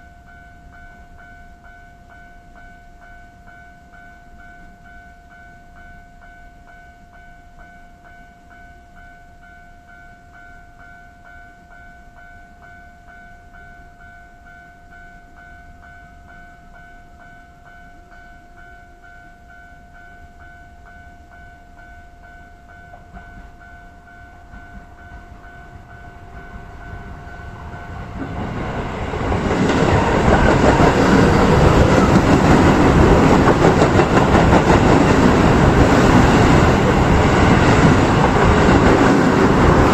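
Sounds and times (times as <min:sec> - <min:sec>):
level crossing alarm dinging: 0:00.3 - 0:39.9
electric train passing: 0:14.9 - 0:39.9.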